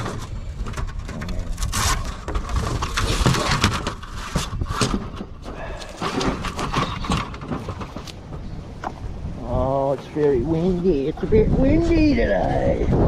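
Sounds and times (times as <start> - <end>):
knocks and rustling: 0.0 - 9.2
wind buffeting microphone: 0.0 - 13.0.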